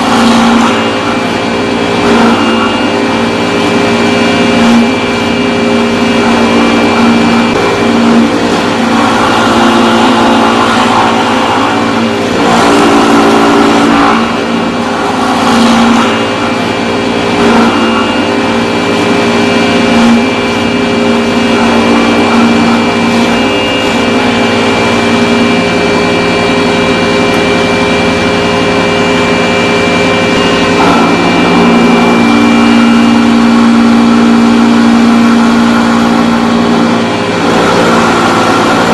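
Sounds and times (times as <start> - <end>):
chainsaw cutting wood: 0.0 - 25.2, 30.3 - 38.9.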